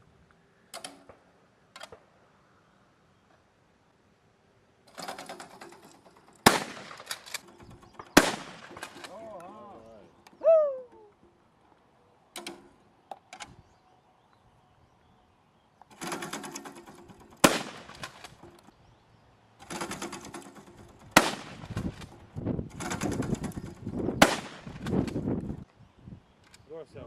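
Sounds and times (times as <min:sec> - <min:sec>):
loud gunshot: 0:06.4 - 0:07.0, 0:08.2 - 0:08.7, 0:17.4 - 0:18.0, 0:21.2 - 0:21.6, 0:24.2 - 0:24.8
rapid crackling gunfire: 0:06.4 - 0:07.2, 0:08.1 - 0:09.0, 0:15.9 - 0:18.4, 0:19.6 - 0:22.1, 0:22.7 - 0:25.2.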